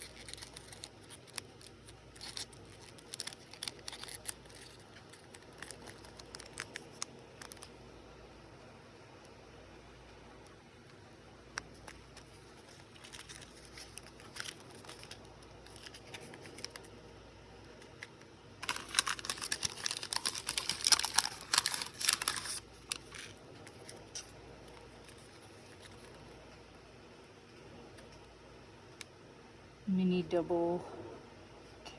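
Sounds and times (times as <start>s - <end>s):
plastic packaging crinkling: 0.0s - 7.8s, 11.5s - 17.0s, 17.7s - 26.6s.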